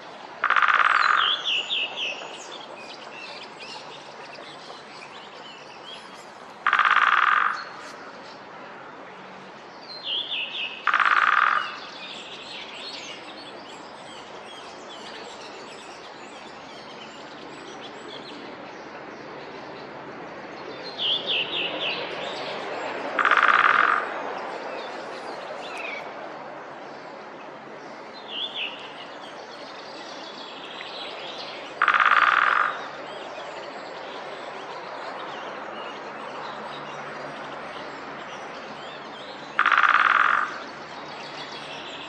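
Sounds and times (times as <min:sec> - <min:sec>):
woodpecker drumming on wood: 0:00.4 - 0:01.5, 0:06.6 - 0:07.9, 0:10.8 - 0:11.8, 0:23.2 - 0:24.2, 0:31.8 - 0:32.8, 0:39.6 - 0:40.6.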